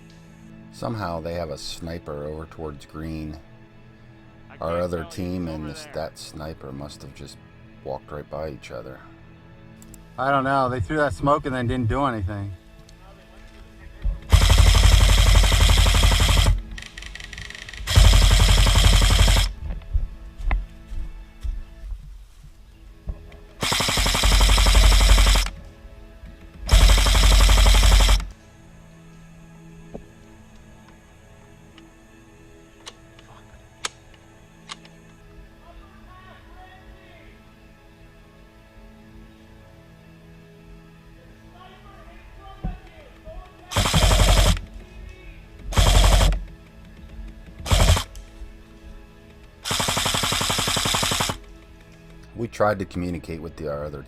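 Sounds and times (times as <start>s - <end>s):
airsoft gun full-auto bursts: 14.3s - 19.6s, 23.6s - 25.5s, 26.7s - 28.3s, 43.7s - 44.7s, 45.7s - 46.4s, 47.7s - 48.1s, 49.6s - 51.4s.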